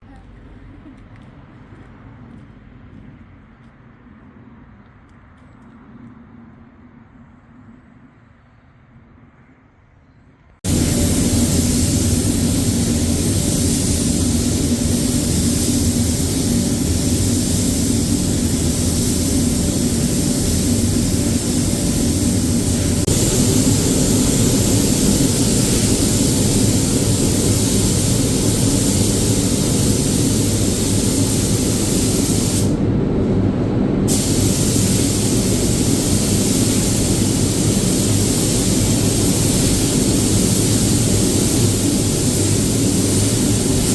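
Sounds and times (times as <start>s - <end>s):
mechanical hum: 0.0s - 43.9s
spray gun hissing: 10.6s - 32.8s, 34.1s - 43.9s.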